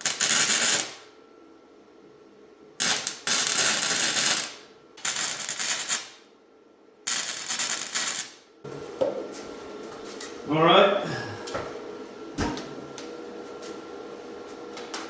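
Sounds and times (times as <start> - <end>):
arc welder crackling: 0.0 - 1.1, 2.8 - 6.4, 7.0 - 8.5.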